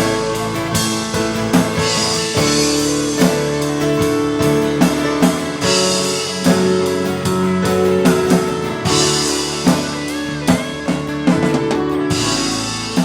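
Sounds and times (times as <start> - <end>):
band playing guitar and drums: 0.0 - 13.0.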